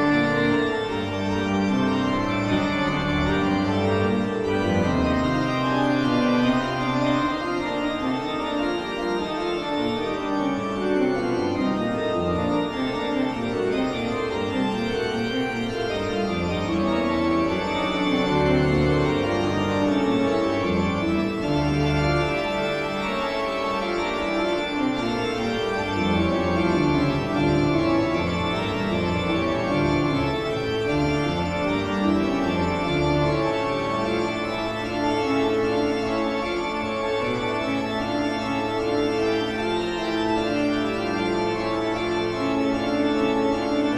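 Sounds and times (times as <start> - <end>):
horror organ music: 0.0 - 43.9.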